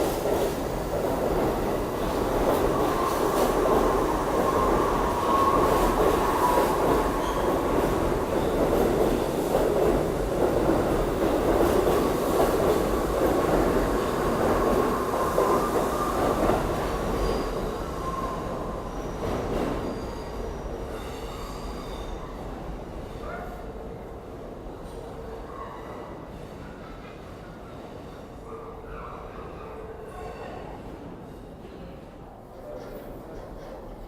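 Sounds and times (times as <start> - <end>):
subway train wheels rumbling: 0.0 - 34.0
train wheel squeal: 4.4 - 8.6, 17.1 - 22.6.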